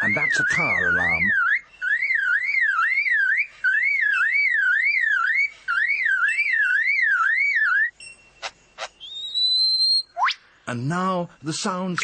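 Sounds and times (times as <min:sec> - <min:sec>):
lyrebird mimicking a car alarm: 0:00.0 - 0:07.9.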